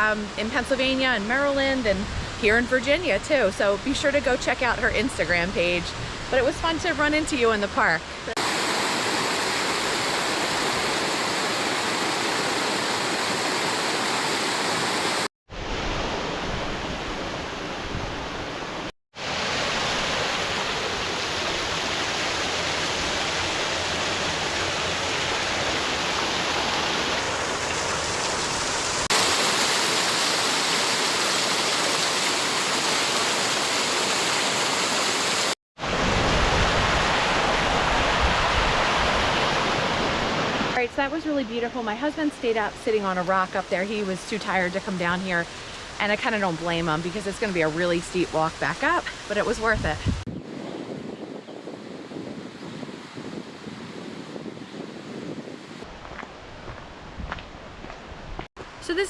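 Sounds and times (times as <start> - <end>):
waterfall rushing: 8.2 - 17.2, 19.2 - 40.8.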